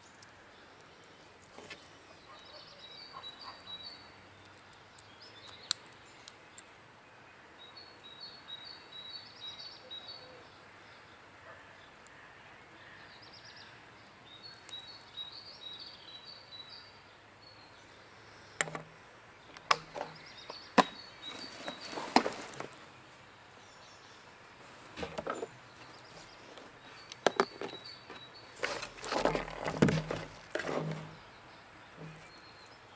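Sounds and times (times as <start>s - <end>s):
small birds chirping: 0.0s - 32.9s
sharp clicks and knocks: 18.6s - 21.0s, 27.1s - 31.2s.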